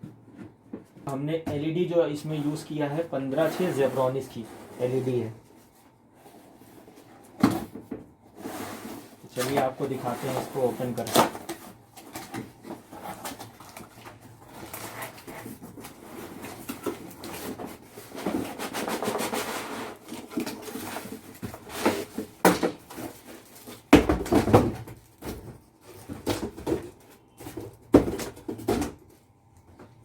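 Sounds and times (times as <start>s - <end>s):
cardboard packaging rustling: 8.6s - 28.8s.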